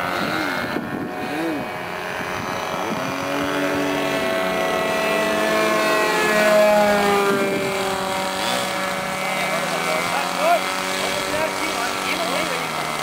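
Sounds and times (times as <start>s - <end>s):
model airplane motor whining: 0.0s - 13.0s.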